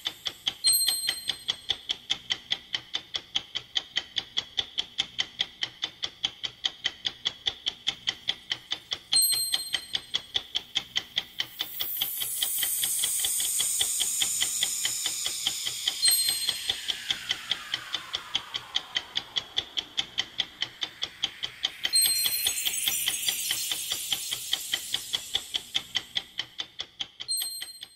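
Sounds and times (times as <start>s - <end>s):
clock ticking: 0.0s - 27.9s
rising sweep: 11.1s - 26.6s
falling sweep: 11.6s - 26.2s
bright ding: 11.7s - 17.6s, 20.2s - 26.2s.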